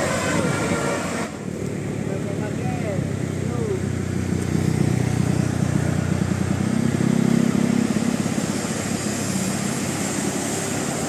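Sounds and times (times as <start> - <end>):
passing vehicle engine drone: 0.0 - 11.0.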